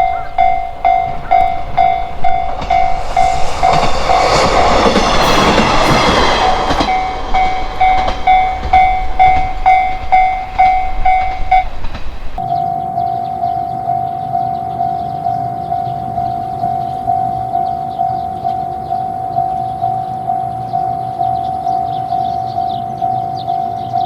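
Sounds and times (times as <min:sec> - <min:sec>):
train passing: 0:00.0 - 0:12.6
railroad crossing bell clanging: 0:00.0 - 0:24.0.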